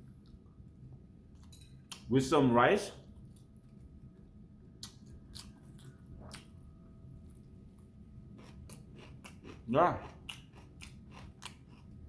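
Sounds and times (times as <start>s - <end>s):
person chewing food: 4.8s - 6.6s, 7.2s - 12.0s.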